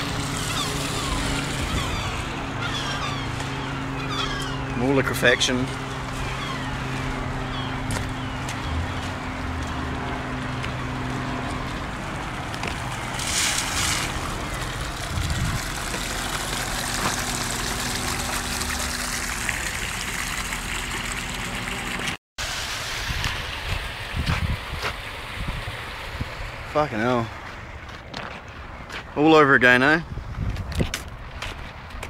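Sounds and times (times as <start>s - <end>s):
vehicle engine idling: 0.0s - 22.2s
water trickling and gurgling: 5.8s - 28.7s.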